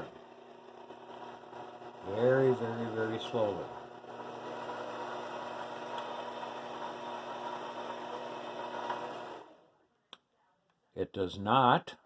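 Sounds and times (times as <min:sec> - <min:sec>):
lathe motor humming: 0:00.0 - 0:09.6.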